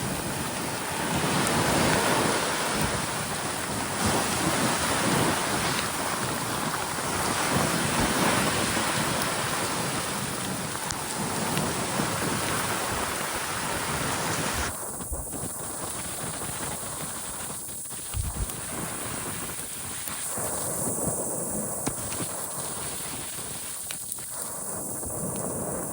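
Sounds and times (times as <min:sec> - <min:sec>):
ocean surf washing in: 0:00.0 - 0:14.8
rain falling: 0:00.0 - 0:20.7.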